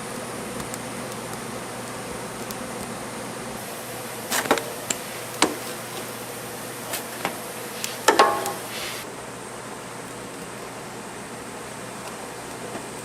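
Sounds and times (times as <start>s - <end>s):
steady background hiss: 0.0s - 13.0s
kitchen knocks and clinks: 8.0s - 8.7s
metallic ring: 8.1s - 8.7s.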